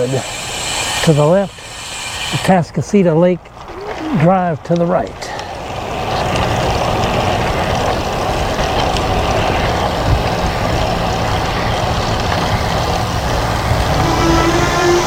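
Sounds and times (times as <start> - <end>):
road noise: 0.0 - 15.0
low hum: 13.2 - 15.0.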